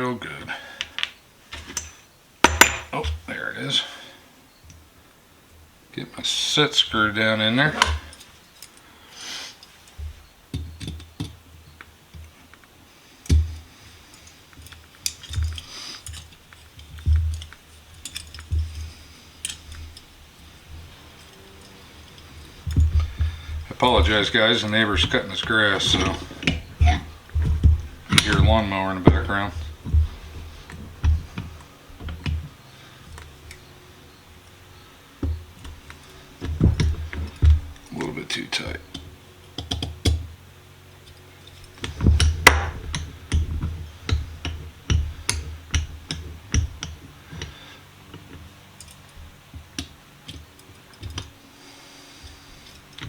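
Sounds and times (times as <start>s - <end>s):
faint lawnmower running: 11.4s - 53.0s
hand tools clicking on metal: 12.1s - 32.5s, 35.2s - 40.3s, 41.0s - 51.4s
dull knocks: 22.5s - 32.5s.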